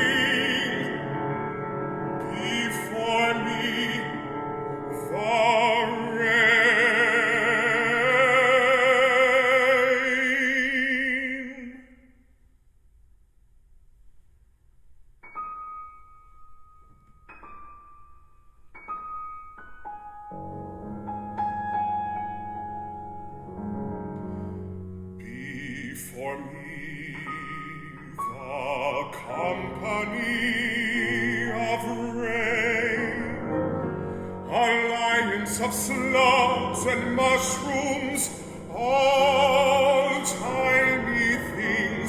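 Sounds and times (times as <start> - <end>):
piano chords: 0.0 - 10.8, 15.2 - 42.0
baritone singing with vibrato: 0.0 - 12.2, 25.2 - 42.0.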